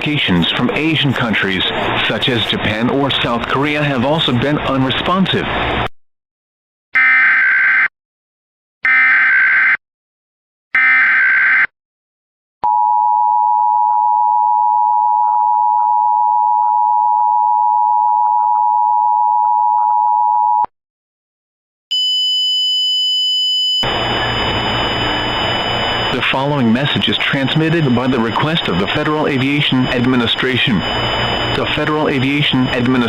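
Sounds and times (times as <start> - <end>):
steady attention tone: 21.9 - 33.0
digital data tone bursts: 23.6 - 33.0.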